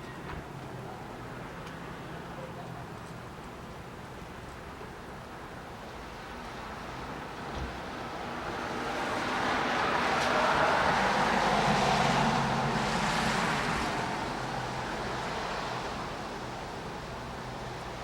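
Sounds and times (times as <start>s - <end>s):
vehicle passing by: 8.6s - 15.9s.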